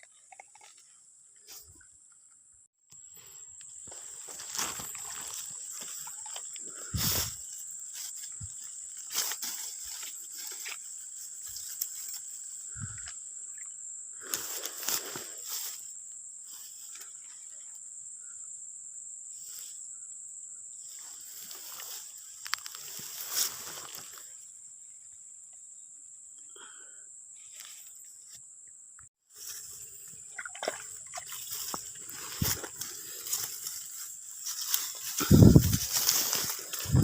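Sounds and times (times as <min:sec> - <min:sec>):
high-pitched insect drone: 0:02.9 - 0:25.1, 0:29.4 - 0:37.0
light water splashing: 0:30.0 - 0:33.6
rustling: 0:31.4 - 0:37.0.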